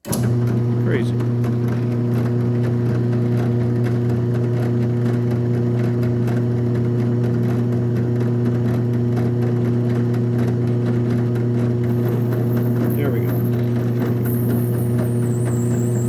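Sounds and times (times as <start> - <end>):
drill press motor humming: 11.8 - 16.0.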